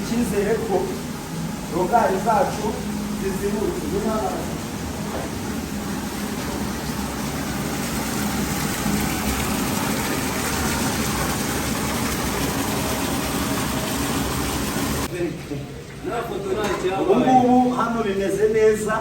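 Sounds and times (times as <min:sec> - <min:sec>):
water rushing down drain: 0:00.0 - 0:15.1.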